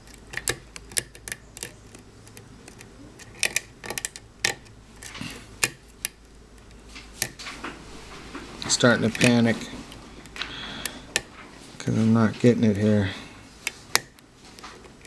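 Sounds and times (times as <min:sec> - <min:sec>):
lock pick clicking on pins: 0:00.0 - 0:07.4, 0:08.7 - 0:09.4, 0:10.2 - 0:11.3, 0:13.6 - 0:15.0.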